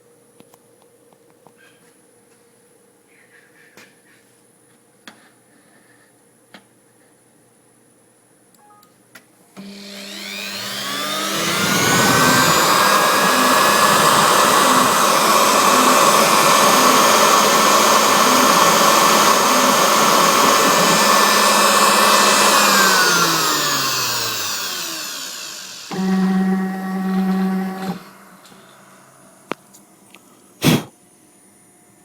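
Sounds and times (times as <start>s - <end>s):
router spindle whining: 9.6s - 29.8s.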